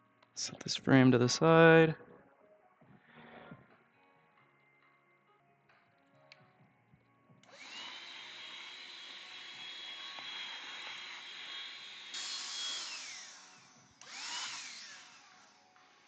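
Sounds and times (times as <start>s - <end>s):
handheld vacuum cleaner motor whine: 7.4s - 16.0s.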